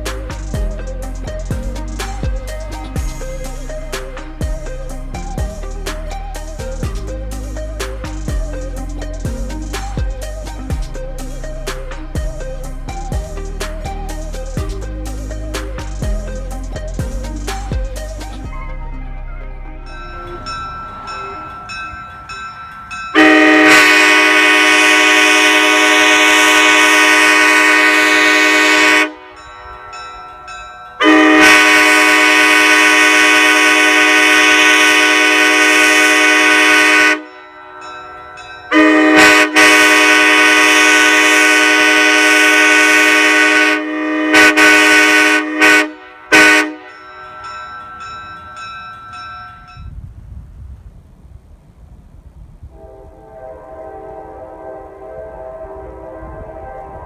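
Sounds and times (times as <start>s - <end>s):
short horn toots: 23.2s - 29.3s, 31.0s - 37.3s, 38.7s - 47.0s
locomotive air horn chord: 23.2s - 30.2s, 31.0s - 48.1s, 52.7s - 57.0s.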